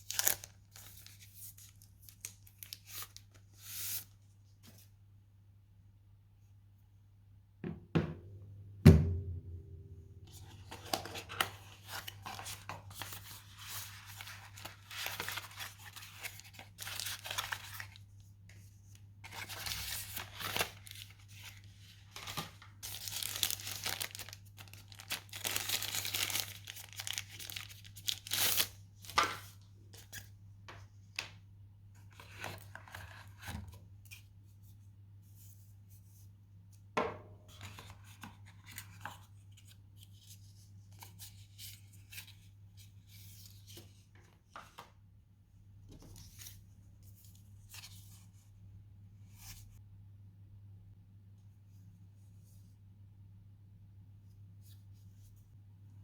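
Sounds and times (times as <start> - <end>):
tearing and crinkling packaging: 0.0 - 3.2, 10.6 - 18.0, 19.3 - 28.8
sharp knock: 8.9 - 9.6.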